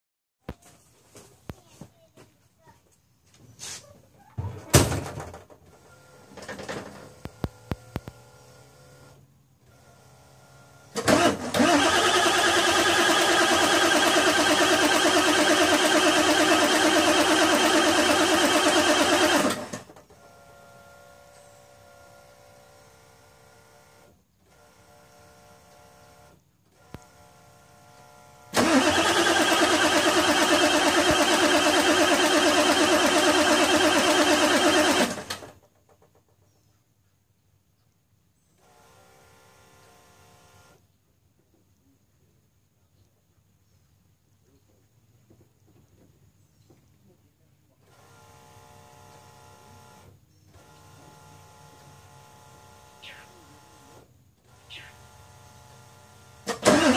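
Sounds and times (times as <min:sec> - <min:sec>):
starter cranking engine: 0:10.9 - 0:20.1, 0:28.5 - 0:36.2, 0:56.4 - 0:56.9.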